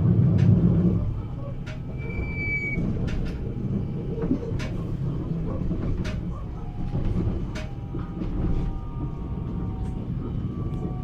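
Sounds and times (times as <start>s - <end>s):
train rumble inside carriage: 0.0s - 11.0s
sharp clicks of train wheels: 0.2s - 0.9s.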